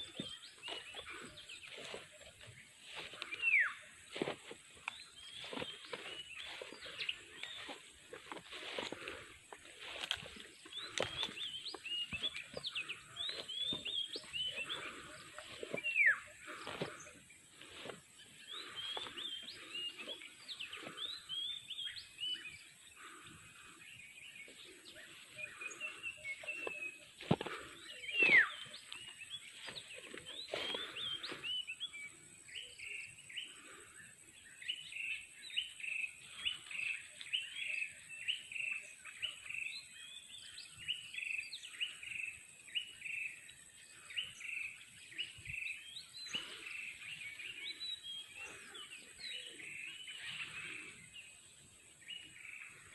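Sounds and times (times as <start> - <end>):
downward-sweeping bird calls: 0.0 - 4.3, 24.0 - 32.0
birds chirping: 0.0 - 52.9.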